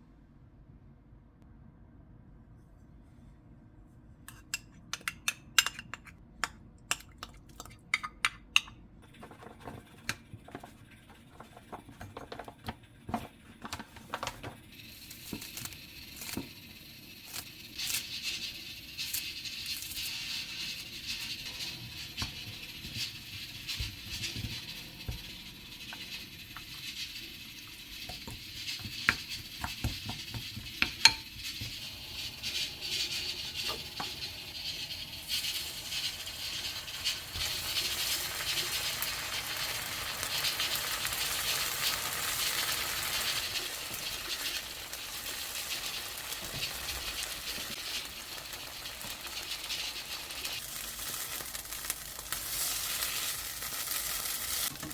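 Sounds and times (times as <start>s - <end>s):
food sizzling in a frying pan: 11.1s - 54.9s.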